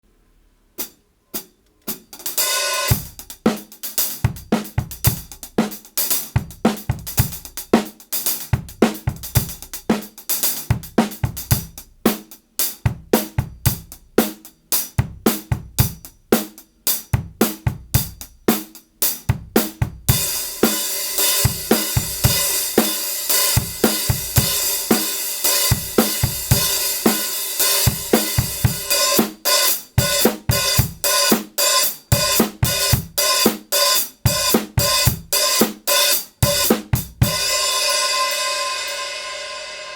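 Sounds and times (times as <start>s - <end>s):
hi-hat cymbals: 0.8s - 39.9s
kick and snare beats: 17.2s - 37.6s.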